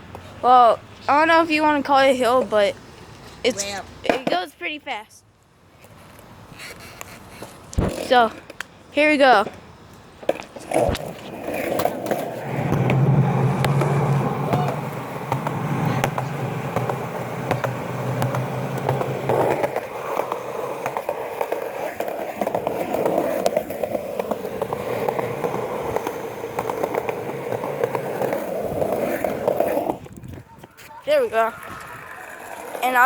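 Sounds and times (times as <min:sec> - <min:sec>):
skateboard wheels rolling on pavement: 0:00.0 - 0:33.0.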